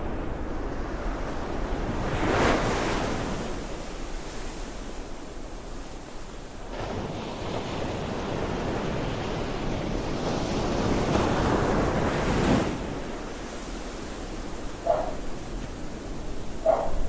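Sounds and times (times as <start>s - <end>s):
ocean waves rushing: 6.6s - 17.0s.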